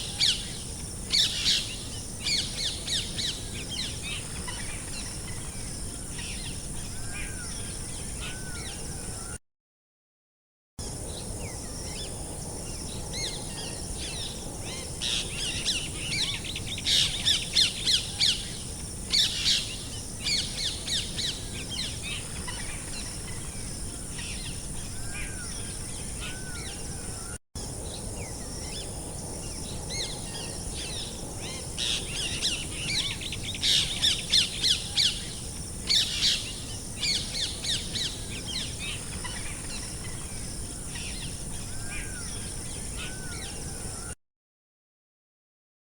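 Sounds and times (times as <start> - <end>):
songbirds chirping: 10.8 - 44.2.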